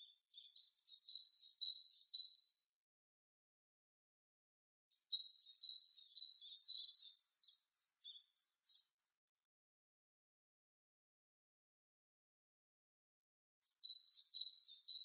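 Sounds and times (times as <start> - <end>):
great tit singing: 0.0 - 2.4, 4.9 - 9.2, 13.7 - 15.0.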